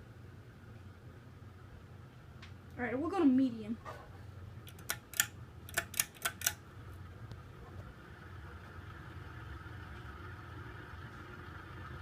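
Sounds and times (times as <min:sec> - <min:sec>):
ceiling fan humming: 0:00.0 - 0:12.0
ceiling fan pull-chain clicks: 0:04.6 - 0:06.6.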